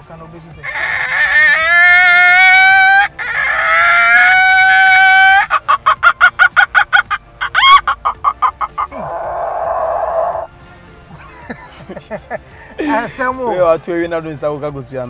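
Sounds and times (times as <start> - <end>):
man imitating rooster crow: 0.6 - 5.5, 8.8 - 10.5
man imitating hen clucks: 0.6 - 10.5
man imitating squawk: 0.6 - 10.5.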